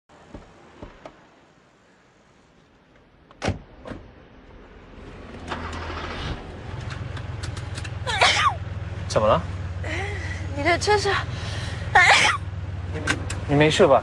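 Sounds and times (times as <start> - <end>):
car engine starting and running: 2.9 - 14.0
car door shutting: 3.3 - 4.2.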